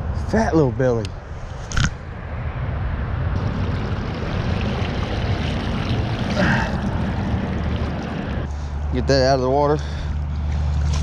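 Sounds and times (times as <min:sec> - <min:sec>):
low rumble: 0:02.1 - 0:08.6
creek water rushing: 0:03.4 - 0:09.0.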